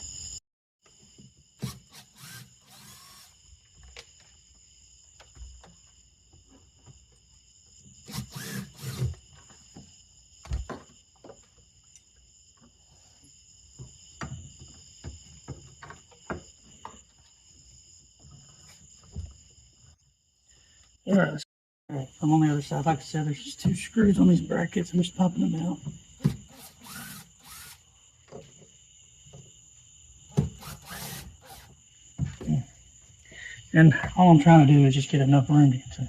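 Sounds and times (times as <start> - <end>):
cordless drill driving screws: 1.6 - 3.4, 8.1 - 9.2, 26.3 - 27.8, 30.4 - 31.7
knocks and taps of tools: 13.8 - 17.0.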